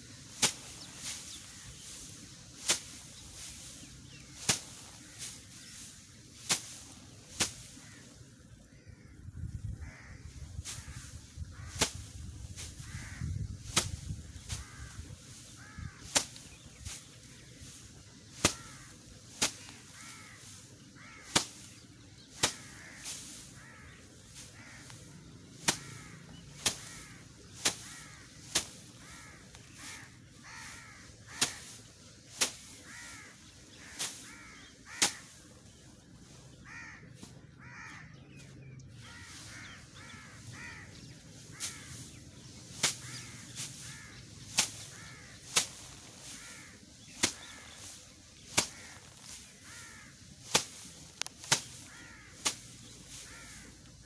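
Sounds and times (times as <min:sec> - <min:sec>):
sickle cutting rice stalks: 0:00.0 - 0:54.0
crows cawing: 0:09.8 - 0:13.4, 0:14.4 - 0:16.5, 0:18.2 - 0:21.8, 0:22.4 - 0:35.5, 0:36.2 - 0:54.0.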